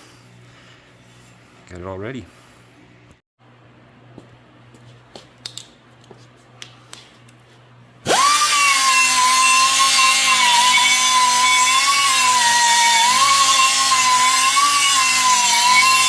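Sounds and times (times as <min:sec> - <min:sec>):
angle grinder whining: 0:08.0 - 0:16.0.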